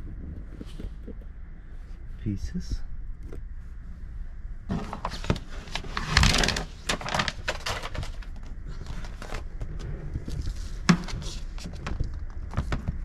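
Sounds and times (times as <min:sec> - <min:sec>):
mat rustling and crinkling: 0:04.6 - 0:13.0.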